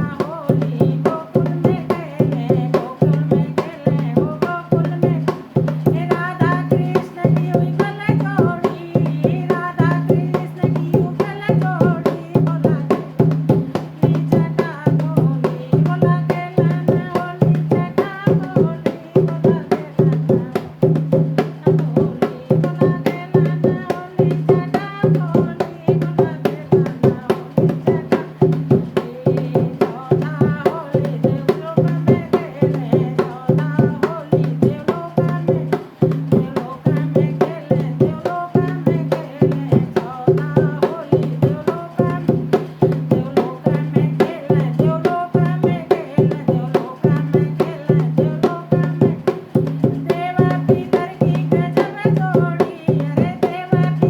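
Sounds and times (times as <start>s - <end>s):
hand drum beat: 0.0s - 54.0s
person singing folk song: 0.0s - 54.0s.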